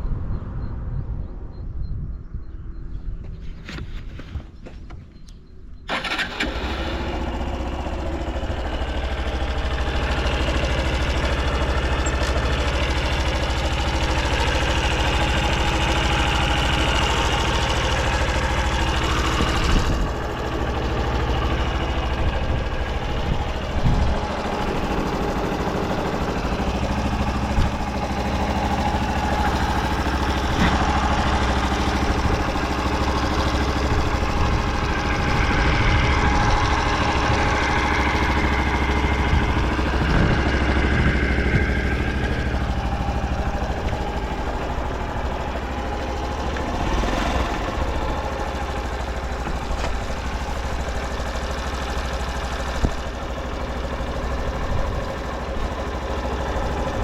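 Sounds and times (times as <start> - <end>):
motorcycle engine idling: 5.2 - 57.0.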